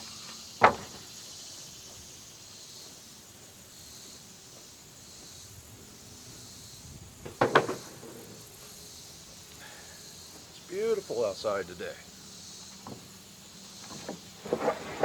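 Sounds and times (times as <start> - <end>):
insects buzzing: 0.0 - 15.0
knocks: 7.3 - 8.1.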